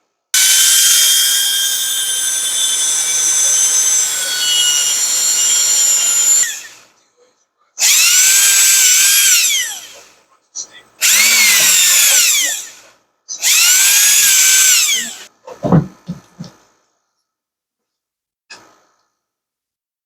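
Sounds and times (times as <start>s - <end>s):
power tool motor whining: 0.4s - 6.9s, 7.8s - 10.1s, 11.0s - 12.8s, 13.4s - 15.9s.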